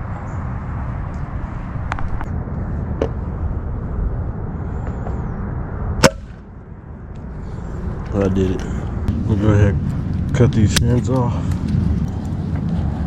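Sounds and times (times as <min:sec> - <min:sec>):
steady low rumble: 0:00.0 - 0:13.0
air rifle shot: 0:06.0 - 0:06.4.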